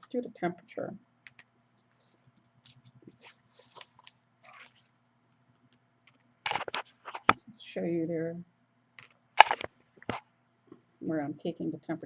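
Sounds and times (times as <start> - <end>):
clothing rustling: 1.4 - 5.0, 6.5 - 7.4.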